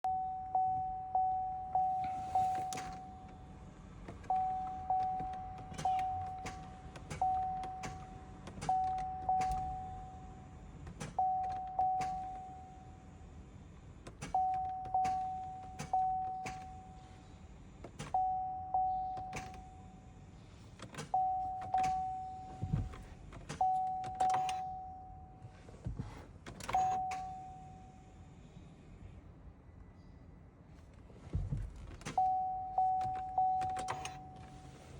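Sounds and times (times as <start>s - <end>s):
dashboard warning chime dinging: 0.0s - 13.2s, 14.2s - 17.4s, 18.0s - 20.2s, 21.0s - 25.8s, 26.6s - 28.2s, 32.0s - 34.9s.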